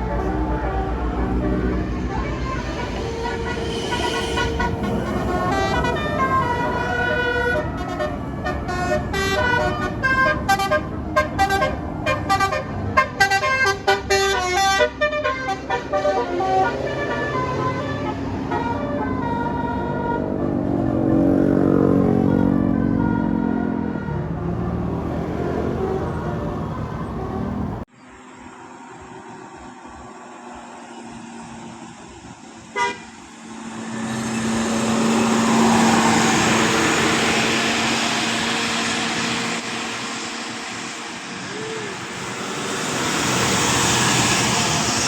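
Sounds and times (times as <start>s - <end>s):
multi-tone air horn melody: 0.0s - 20.3s, 32.7s - 45.0s
bus engine and road noise: 0.0s - 45.0s.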